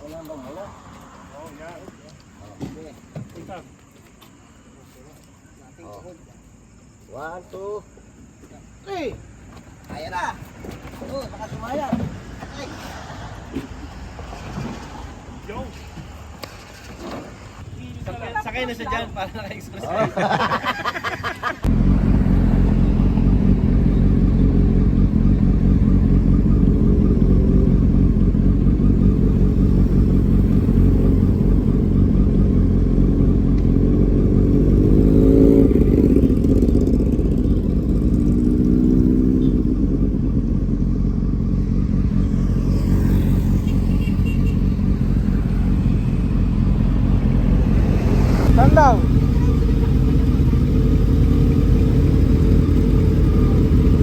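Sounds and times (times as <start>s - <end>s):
motorcycle engine rumble: 20.2s - 54.0s.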